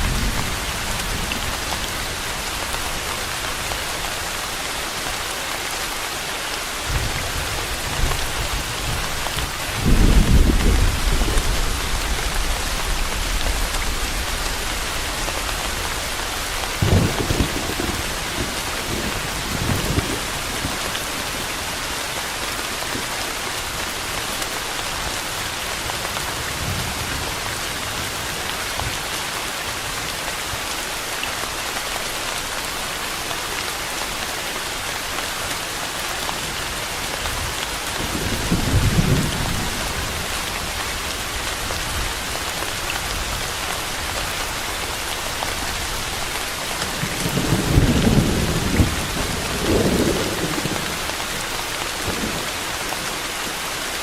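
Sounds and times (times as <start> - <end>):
heavy rain: 0.0 - 54.0
thunder rumbling: 6.9 - 20.9, 46.9 - 51.2.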